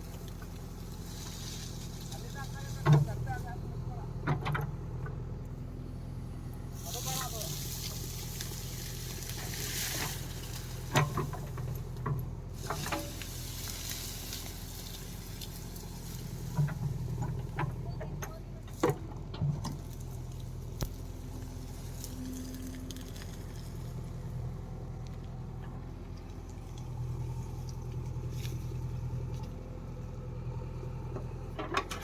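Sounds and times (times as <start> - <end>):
tractor engine running: 0.0 - 32.0
sharp knocks and clattering: 4.2 - 5.2, 10.9 - 13.2.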